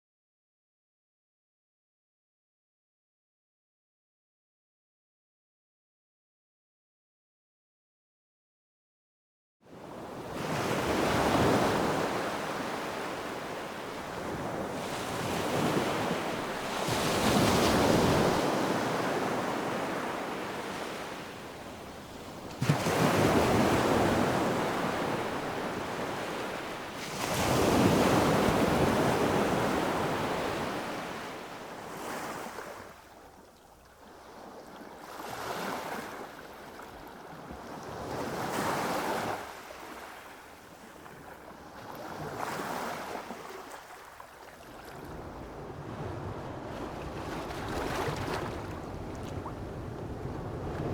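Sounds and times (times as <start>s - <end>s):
small waves lapping on sand: 9.9s - 50.9s
surf breaking on a beach: 10.4s - 31.4s, 44.6s - 50.9s.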